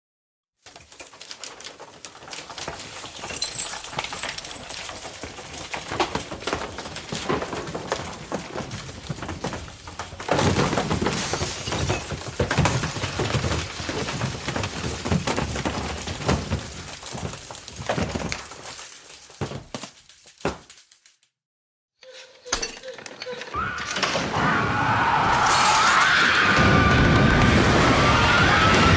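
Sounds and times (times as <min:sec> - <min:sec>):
cracking: 0:00.6 - 0:21.3
glass breaking: 0:02.3 - 0:21.2.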